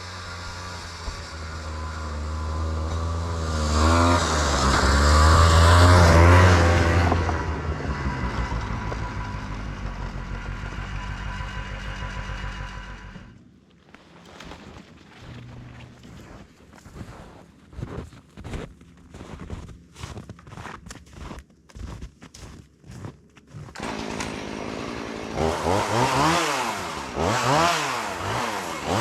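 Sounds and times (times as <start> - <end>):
snowmobile engine passing by: 0.0 - 13.3, 23.8 - 29.0.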